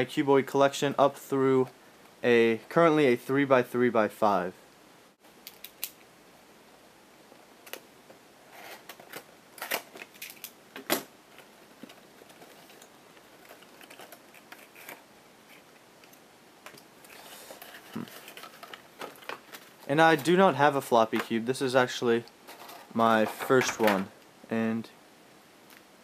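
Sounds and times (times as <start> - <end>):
plastic packaging clicks and rustles: 8.7 - 20.5.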